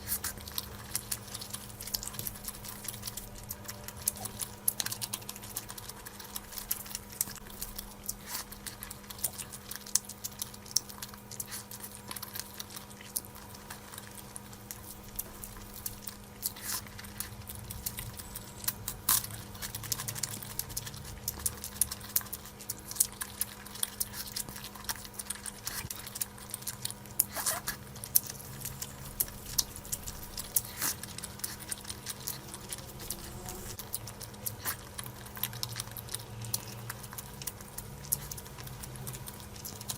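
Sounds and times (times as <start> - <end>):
chewing with wet mouth clicks: 0.0 - 39.9
faint steady hum: 0.0 - 39.9.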